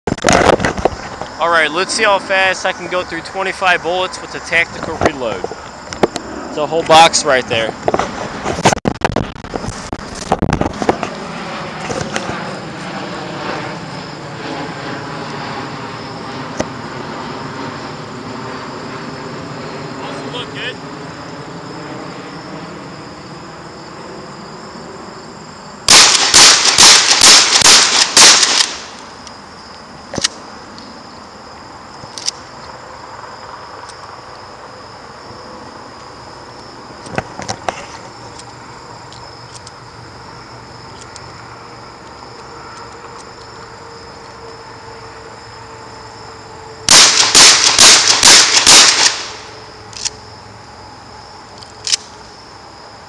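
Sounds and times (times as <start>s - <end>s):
shotgun shots: 25.9s - 29.0s, 46.9s - 49.5s.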